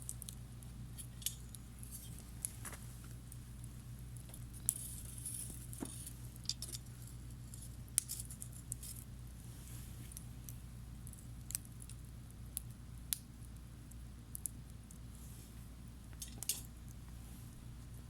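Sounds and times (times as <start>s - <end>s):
campfire crackling: 0.0s - 18.0s
steady low hum: 0.0s - 18.0s.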